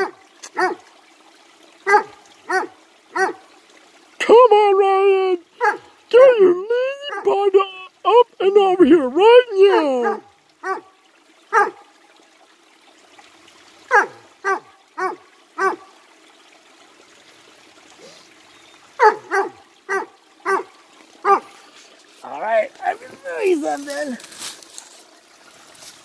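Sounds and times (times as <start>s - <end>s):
dog barking: 0.0s - 0.8s, 1.8s - 3.4s, 5.6s - 5.9s, 10.0s - 11.8s, 13.9s - 15.9s, 19.0s - 21.5s
stream water trickling: 0.0s - 26.0s.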